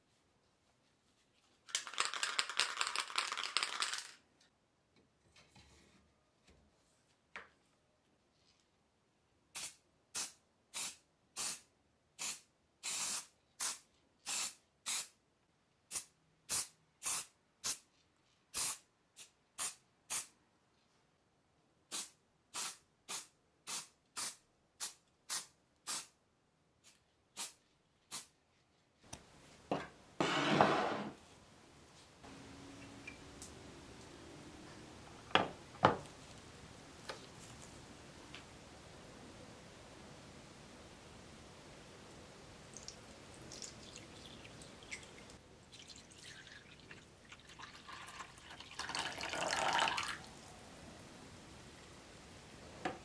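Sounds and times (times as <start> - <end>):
spraying hiss bursts: 9.6 - 11.6, 12.2 - 15.1, 15.9 - 17.8, 21.9 - 26.1.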